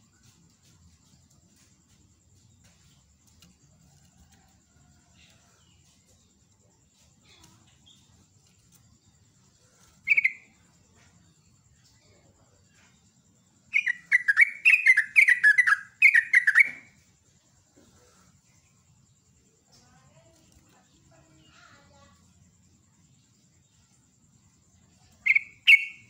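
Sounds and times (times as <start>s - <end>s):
faint bird chirps: 0.0s - 26.0s
bird call: 13.7s - 16.9s, 25.2s - 26.0s.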